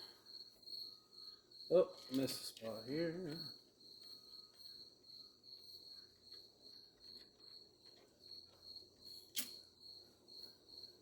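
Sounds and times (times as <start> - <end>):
cricket chirping: 0.0 - 11.0
small clicks: 9.3 - 9.6.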